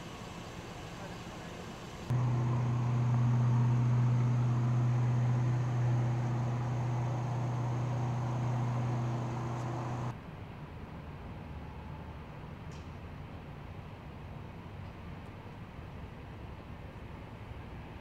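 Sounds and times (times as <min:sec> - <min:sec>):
low mechanical hum: 0:00.0 - 0:10.2.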